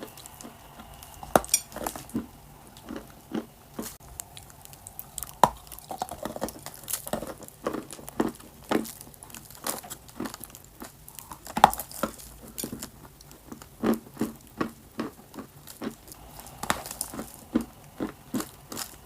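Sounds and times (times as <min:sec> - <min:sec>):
crunching and chewing clay: 0:00.0 - 0:19.0.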